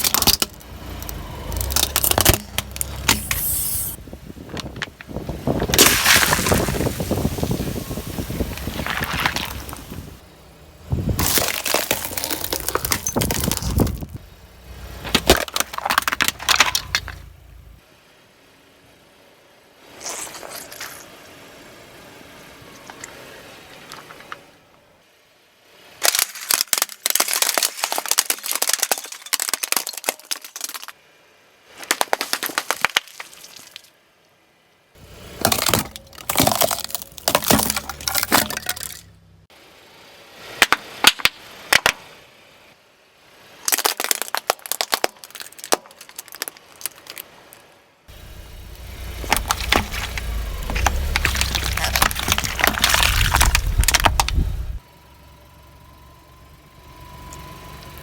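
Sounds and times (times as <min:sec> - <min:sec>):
objects crunching under car tyres: 0:00.0 - 0:17.8, 0:19.8 - 0:21.3, 0:22.7 - 0:24.7, 0:31.7 - 0:33.9, 0:35.0 - 0:39.2, 0:43.5 - 0:54.8
low rumble: 0:00.3 - 0:11.4, 0:48.1 - 0:54.8.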